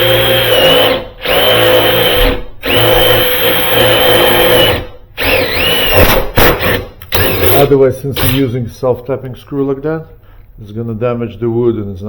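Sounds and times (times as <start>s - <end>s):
power drill whining: 0.0s - 8.4s.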